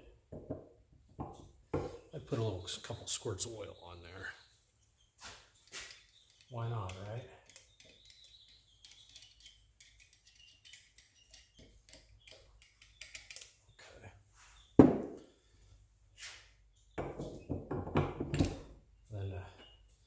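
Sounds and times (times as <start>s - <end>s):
small steel parts clicking: 5.8s - 13.6s.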